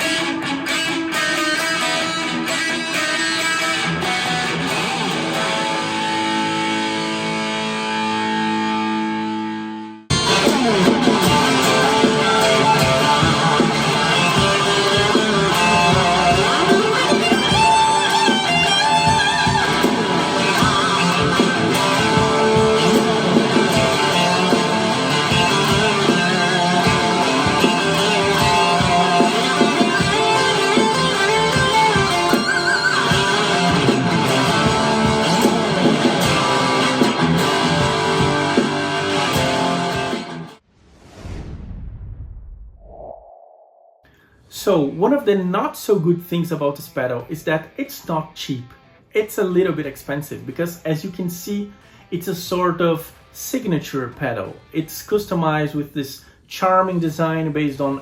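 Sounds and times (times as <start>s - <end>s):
overdriven electric guitar: 0.0s - 40.6s, 48.2s - 49.1s.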